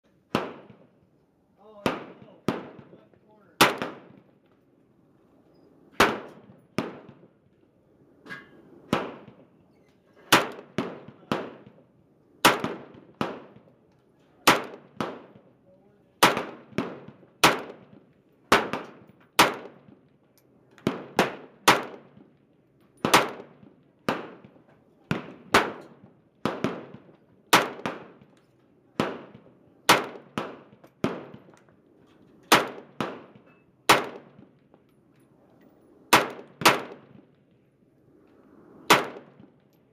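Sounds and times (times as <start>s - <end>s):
rifle shots: 1.8s - 2.9s, 3.6s - 4.2s, 6.0s - 7.2s, 10.3s - 11.8s, 12.4s - 13.7s, 14.4s - 15.4s, 16.2s - 19.9s, 20.8s - 22.2s, 23.0s - 28.3s, 29.0s - 31.5s, 32.5s - 34.5s, 36.1s - 37.2s, 38.9s - 39.5s.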